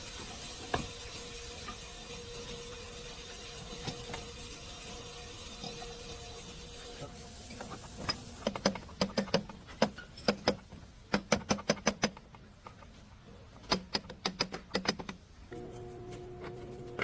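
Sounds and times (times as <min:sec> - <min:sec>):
sharp clicks and taps: 0:08.4 - 0:12.4, 0:13.6 - 0:15.2.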